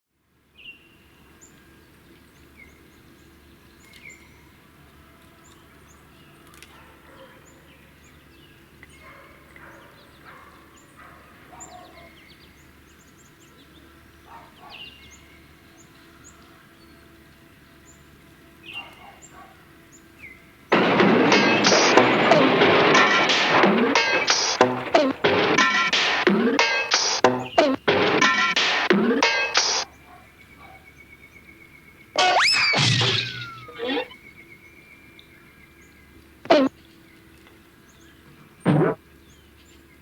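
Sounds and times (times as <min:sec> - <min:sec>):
songbirds chirping: 0:00.3 - 0:20.7, 0:29.8 - 0:40.0.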